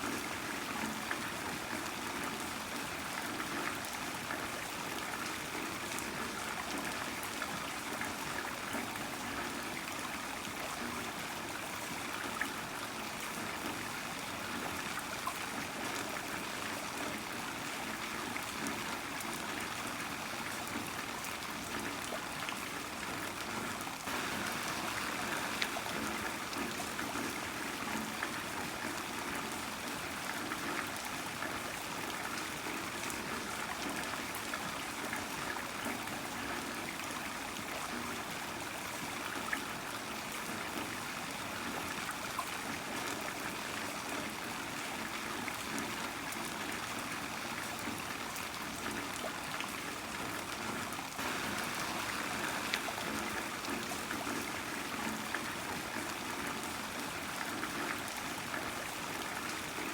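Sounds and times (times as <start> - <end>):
heavy rain falling: 24.1 - 28.4, 51.2 - 55.0.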